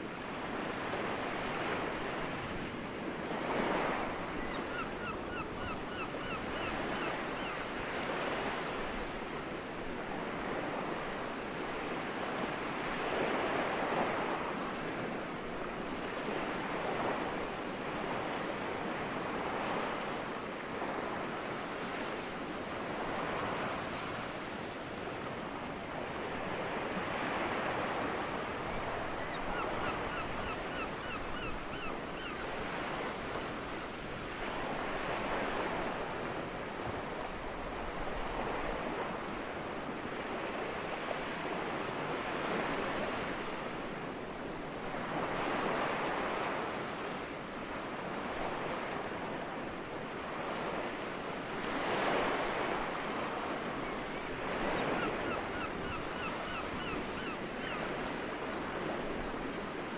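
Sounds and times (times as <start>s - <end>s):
soft sea waves: 0.0s - 59.9s
seagulls calling faintly: 3.6s - 8.4s, 26.7s - 34.0s, 53.4s - 59.9s.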